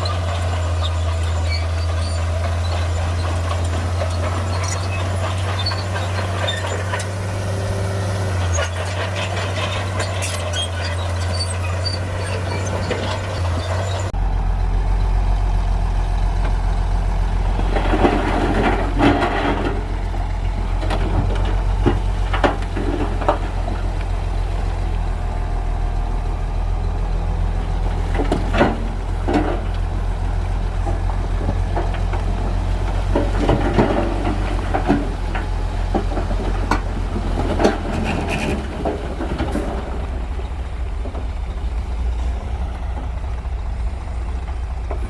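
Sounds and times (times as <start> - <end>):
clanking and rattling: 0.0 - 7.6, 8.2 - 14.2, 17.5 - 24.1, 30.8 - 45.0
bulldozer diesel engine drone: 0.0 - 45.0.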